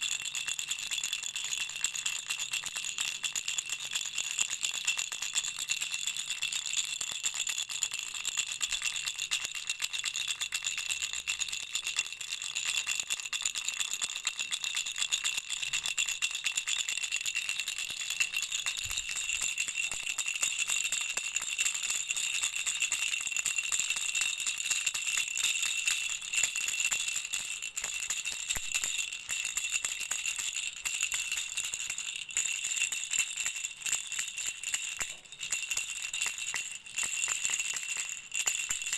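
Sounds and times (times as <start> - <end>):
baby rattle jingling: 14.5 - 38.9.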